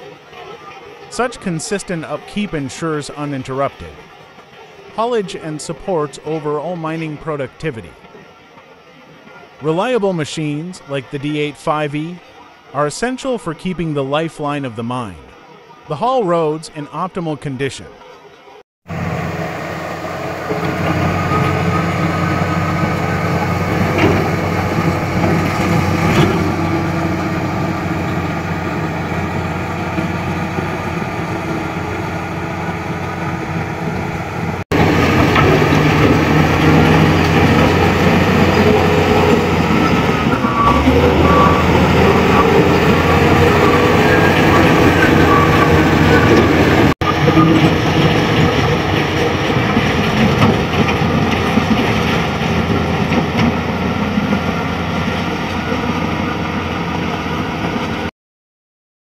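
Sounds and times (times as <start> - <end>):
bulldozer diesel engine running: 18.9 - 58.1.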